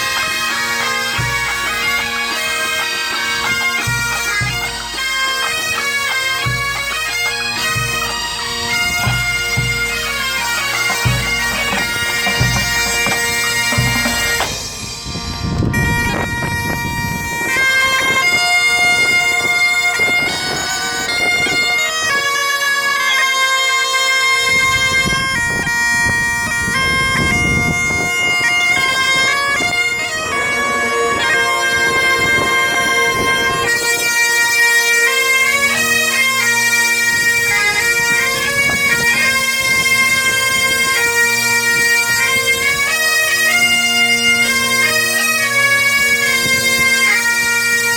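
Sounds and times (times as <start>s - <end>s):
bagpipe drone: 0.0s - 47.9s
bagpipe melody: 0.0s - 47.9s
drums: 8.9s - 15.6s
lower drone: 28.7s - 36.4s.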